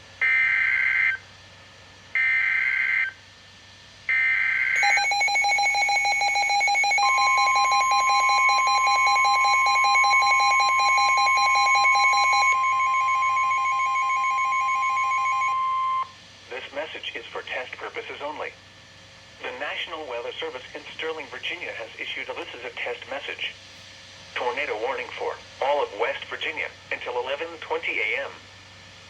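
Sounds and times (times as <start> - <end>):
rapidly pulsing alarm beep: 4.1 - 16.1
steady warning alarm tone: 4.1 - 16.2
screeching digital data bursts: 4.8 - 16.1.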